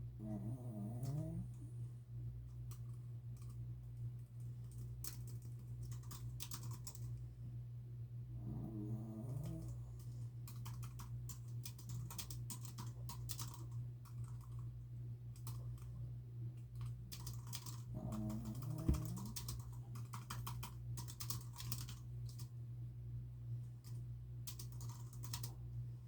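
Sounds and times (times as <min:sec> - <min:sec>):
steady low hum: 0:00.0 - 0:26.0
typing on computer keyboard: 0:04.6 - 0:07.2, 0:10.4 - 0:14.6, 0:15.4 - 0:15.9, 0:16.8 - 0:22.5, 0:23.8 - 0:25.6.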